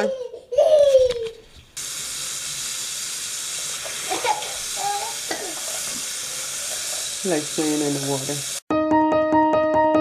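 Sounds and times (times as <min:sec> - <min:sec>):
tap water running: 0:01.8 - 0:08.7.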